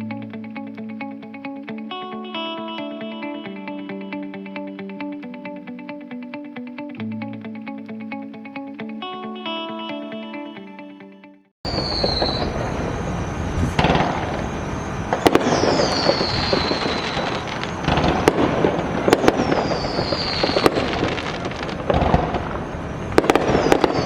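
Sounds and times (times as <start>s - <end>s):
falling firework whistles: 11.7s - 24.0s
fireworks bangs: 11.7s - 24.0s
fireworks crackling: 11.7s - 24.0s.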